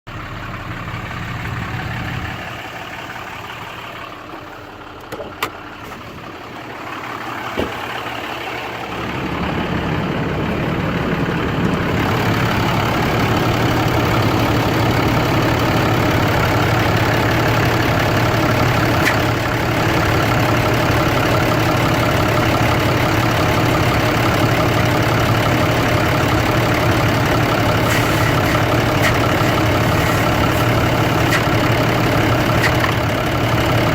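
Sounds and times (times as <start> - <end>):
diesel truck engine idling: 0.1 - 33.9
sharp clicks: 27.8 - 31.5.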